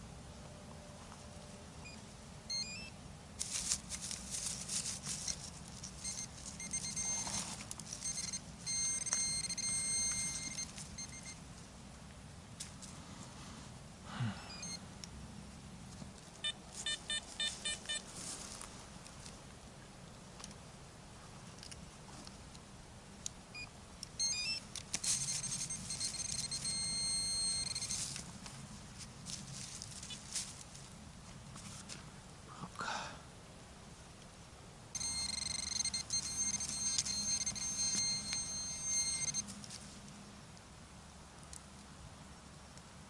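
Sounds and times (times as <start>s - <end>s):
metal detector beeping: 1.8s - 3.0s, 4.8s - 11.4s, 14.5s - 14.8s, 16.4s - 18.1s, 23.6s - 28.2s, 35.0s - 39.5s
rustling and scraping in leaf litter: 3.4s - 8.1s, 16.7s - 18.9s, 27.8s - 32.0s.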